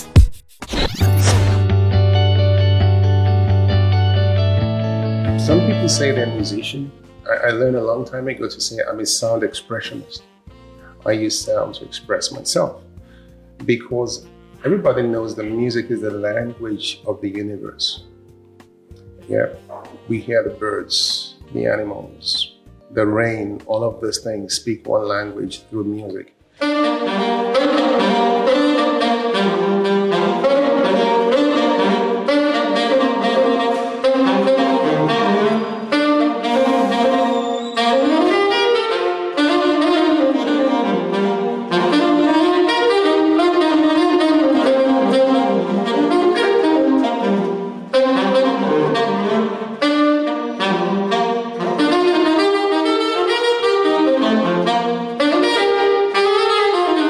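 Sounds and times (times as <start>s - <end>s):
fast jazzy saxophone melody: 26.6s - 57.0s.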